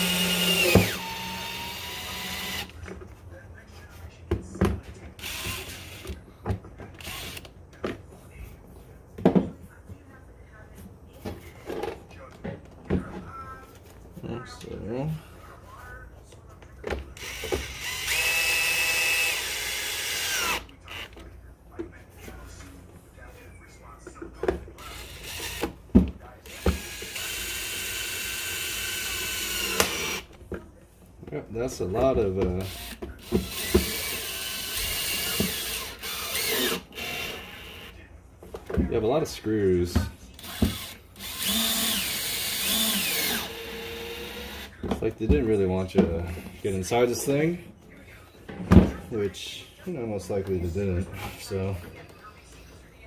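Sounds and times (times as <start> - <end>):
power drill driving a screw: 0.0 - 2.7, 5.2 - 6.0, 7.0 - 7.5, 17.2 - 21.1, 26.5 - 30.3, 32.6 - 37.9, 40.4 - 44.7
screws driven into plastic: 26.5 - 30.3, 40.4 - 44.7.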